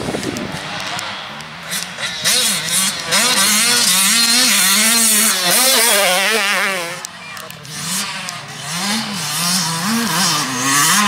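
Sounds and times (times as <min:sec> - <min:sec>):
motocross bike engine revving: 0:00.0 - 0:11.0.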